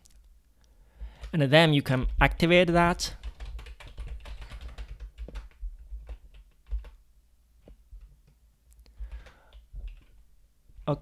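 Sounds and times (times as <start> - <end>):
typing on computer keyboard: 3.1 - 7.0, 9.0 - 10.2.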